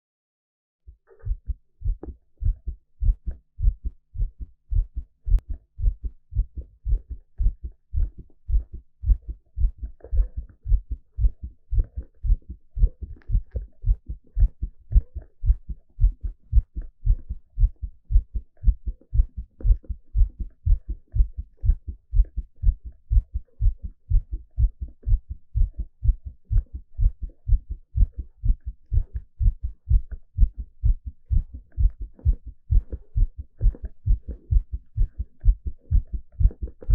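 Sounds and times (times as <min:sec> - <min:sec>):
heartbeat through stethoscope: 0:00.9 - 0:36.9.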